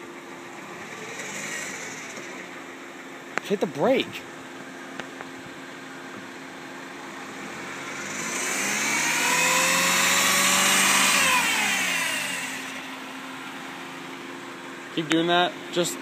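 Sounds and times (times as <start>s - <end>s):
car engine idling and revving: 0.0s - 16.0s.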